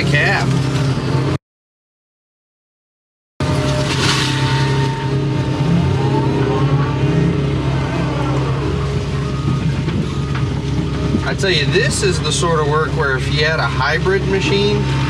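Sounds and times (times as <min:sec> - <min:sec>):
excavator diesel engine running: 0:03.4 - 0:15.0
faint whines: 0:03.4 - 0:15.0.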